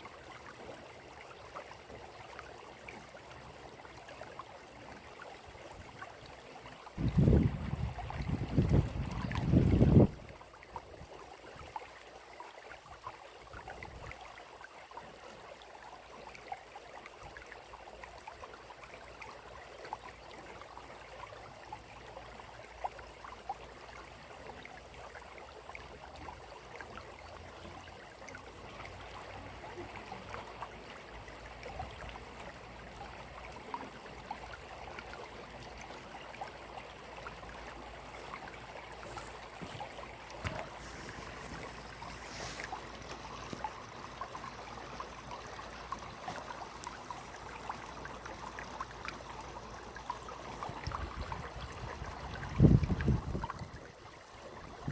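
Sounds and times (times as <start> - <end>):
water splashes and drips: 0.0 - 54.9
water trickling: 0.0 - 54.9.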